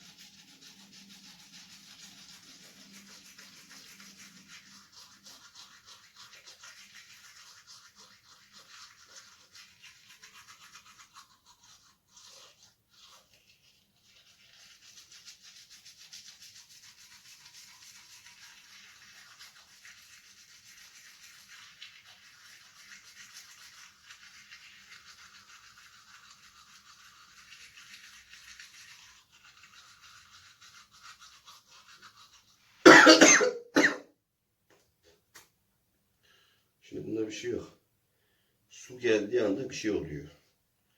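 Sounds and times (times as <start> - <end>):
man coughing: 32.9 - 34.0.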